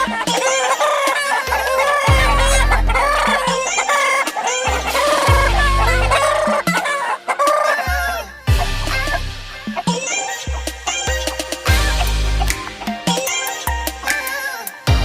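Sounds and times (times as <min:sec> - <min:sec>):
music with sliding bass notes: 0:00.0 - 0:00.4, 0:01.5 - 0:03.7, 0:04.7 - 0:06.7, 0:08.0 - 0:10.0, 0:10.6 - 0:14.2
rooster crowing: 0:00.0 - 0:09.1
chickens clucking: 0:00.0 - 0:14.9.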